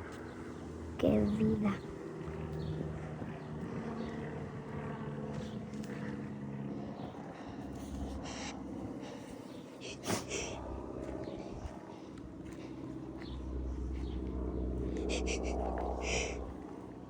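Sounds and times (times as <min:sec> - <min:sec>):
people snoring: 0:15.0 - 0:16.5.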